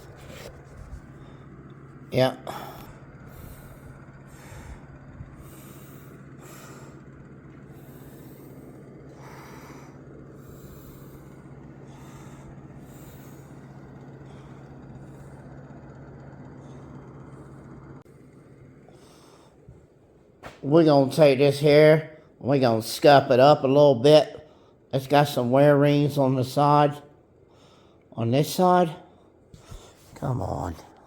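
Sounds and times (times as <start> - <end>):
steady low hum: 0.0 - 31.0
person breathing close: 2.4 - 15.8.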